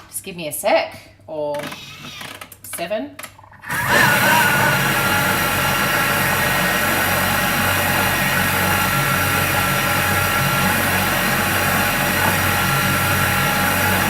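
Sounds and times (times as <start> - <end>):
blender motor whizzing powder: 3.7 - 14.0.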